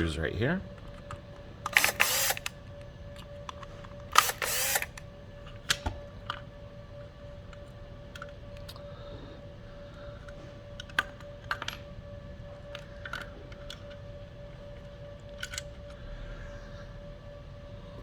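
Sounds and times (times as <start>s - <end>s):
small parts clicking: 0.8s - 2.5s, 3.2s - 5.0s, 15.2s - 16.0s
electric screwdriver whirring: 1.7s - 2.6s, 4.0s - 5.0s.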